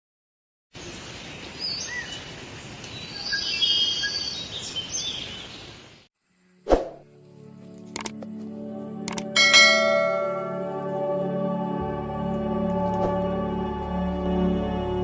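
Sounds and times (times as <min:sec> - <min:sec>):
sharp bell-like strike: 0:09.4 - 0:10.8.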